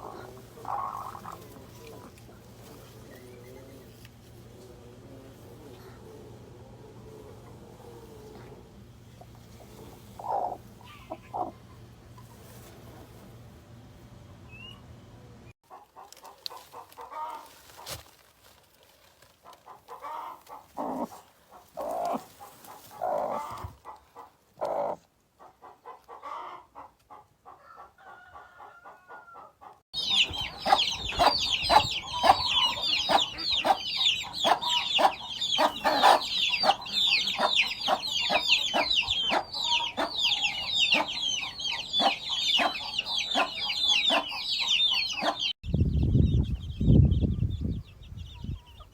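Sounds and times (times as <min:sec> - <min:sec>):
chicks peeping: 0:00.0 - 0:03.9, 0:09.2 - 0:11.6, 0:30.0 - 0:48.9
hens clucking: 0:00.0 - 0:11.8, 0:19.4 - 0:27.9, 0:28.6 - 0:45.5.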